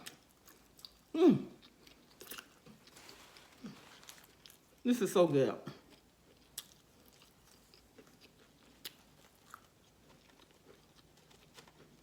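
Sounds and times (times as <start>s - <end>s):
person chewing: 0.0s - 4.8s, 5.7s - 12.0s.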